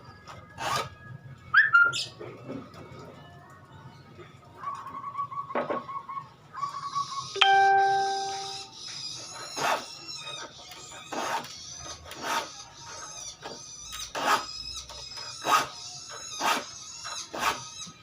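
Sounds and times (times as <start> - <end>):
file rasping on saw teeth: 9.2 - 13.2, 14.0 - 14.6, 15.2 - 17.8.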